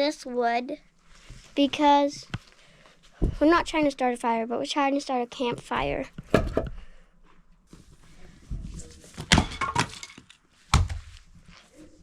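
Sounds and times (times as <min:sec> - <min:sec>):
logs knocking together: 0:06.2 - 0:06.8.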